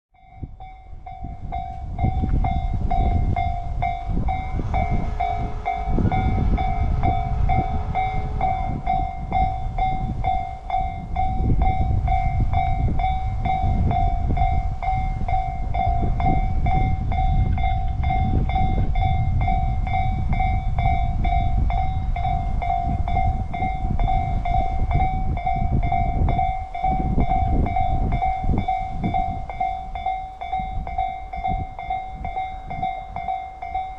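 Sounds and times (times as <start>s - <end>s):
level-crossing warning bell: 0.2s - 33.9s
train rumbling: 0.2s - 33.9s
train horn: 2.8s - 10.7s.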